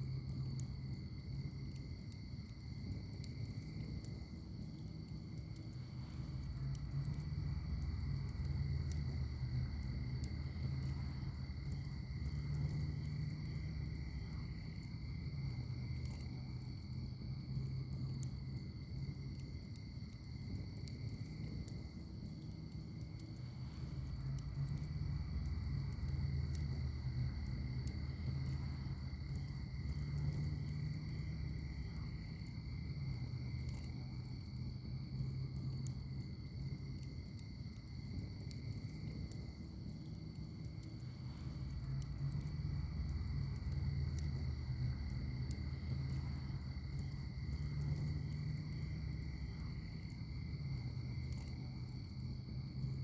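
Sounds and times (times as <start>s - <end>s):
fire crackles and pops: 0.0s - 53.0s
rumble of fire flames: 0.0s - 53.0s.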